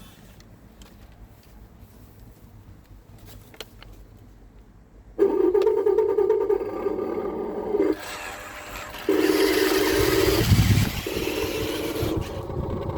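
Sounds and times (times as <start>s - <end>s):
electric motors whining: 7.7s - 12.9s.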